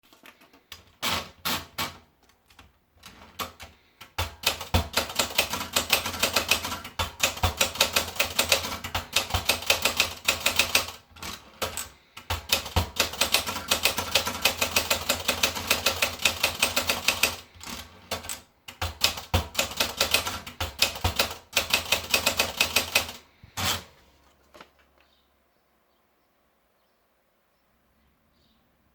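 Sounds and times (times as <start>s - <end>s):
manual typewriter typing: 0.0s - 24.0s.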